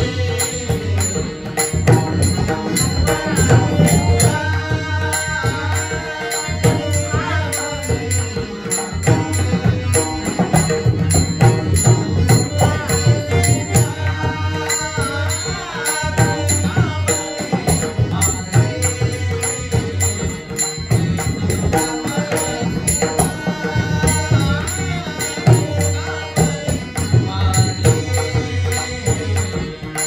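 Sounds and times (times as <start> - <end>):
man singing devotional melody: 0.0 - 30.0
small hand cymbals: 0.1 - 30.0.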